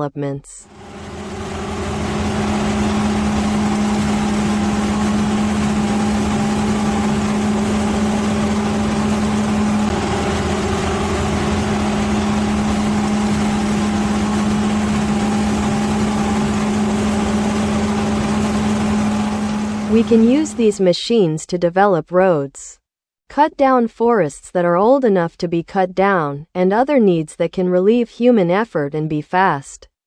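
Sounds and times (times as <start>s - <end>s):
heavy machine engine humming: 0.6s - 20.9s.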